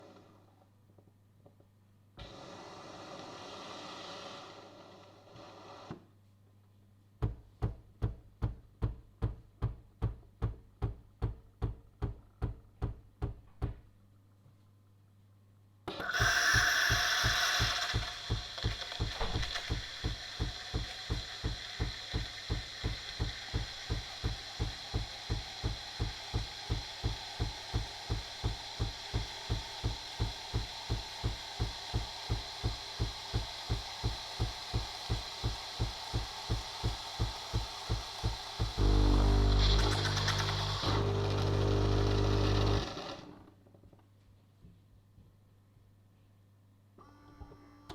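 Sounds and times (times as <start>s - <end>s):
coffee machine whirring and pulsing: 15.9s - 43.5s.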